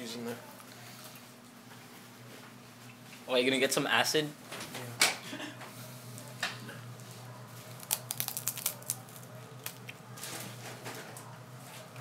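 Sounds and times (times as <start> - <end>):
snack packaging crinkling: 7.6 - 10.0.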